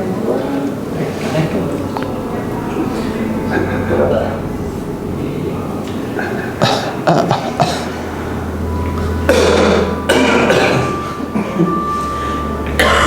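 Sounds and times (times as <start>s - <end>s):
man coughing hard: 6.6s - 8.0s, 9.3s - 11.6s.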